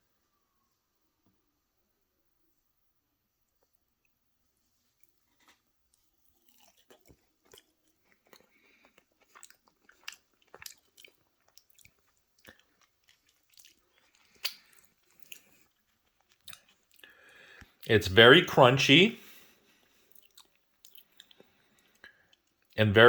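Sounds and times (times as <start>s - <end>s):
crunchy chewing: 4.9s - 17.9s, 19.2s - 22.8s.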